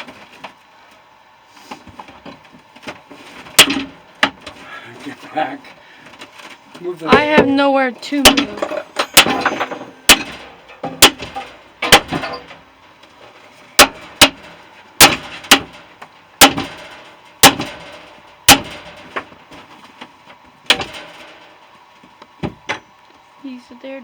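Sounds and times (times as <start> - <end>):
hammer striking metal housing: 3.6 - 4.4, 7.1 - 12.6, 13.8 - 19.2.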